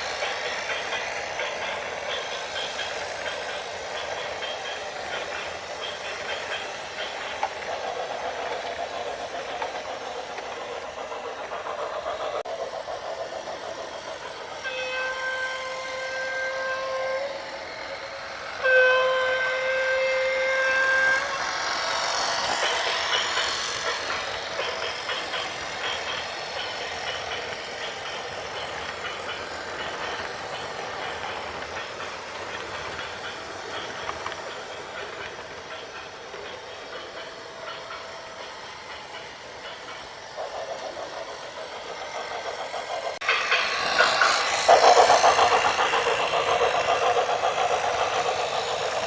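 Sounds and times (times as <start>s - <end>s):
loud hiss: 0.0s - 49.0s
horn blasts: 14.6s - 17.4s, 18.6s - 21.3s.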